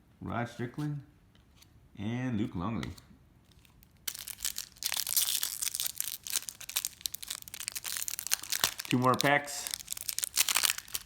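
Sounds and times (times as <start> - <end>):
wrapper crinkling: 3.5 - 11.0.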